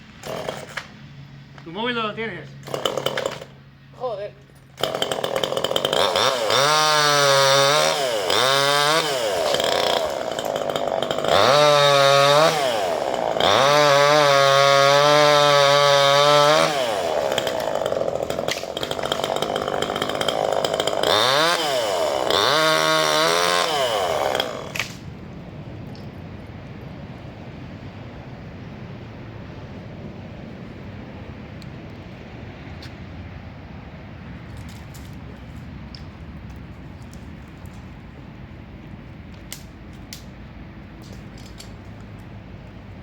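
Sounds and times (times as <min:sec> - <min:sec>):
chainsaw engine revving: 0:00.2 - 0:00.9, 0:02.6 - 0:03.6, 0:04.8 - 0:25.0.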